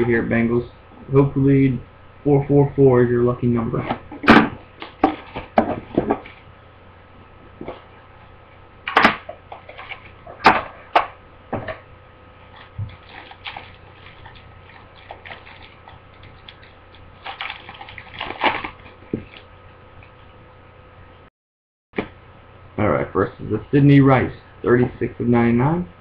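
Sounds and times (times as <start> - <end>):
card box and wrapping crinkling: 12.5 - 19.5.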